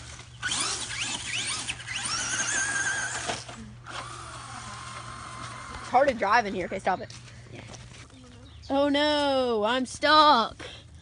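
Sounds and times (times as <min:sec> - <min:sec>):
electric motor whining: 0:00.0 - 0:06.3.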